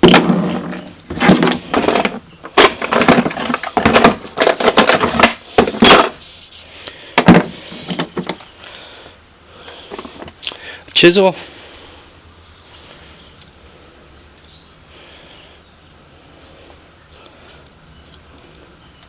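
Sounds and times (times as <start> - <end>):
hand tools clattering in toolbox: 0.0 - 6.3.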